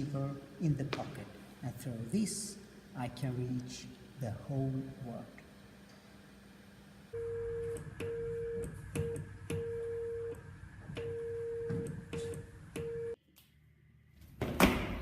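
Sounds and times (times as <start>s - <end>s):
morse code beeping tone: 7.2s - 10.4s, 11.0s - 13.2s.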